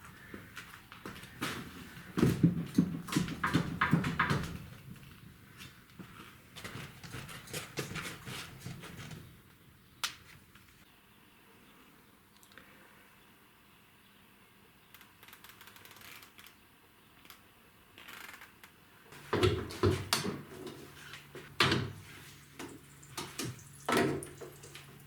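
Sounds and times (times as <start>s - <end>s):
hard objects knocking: 2.2s - 4.7s.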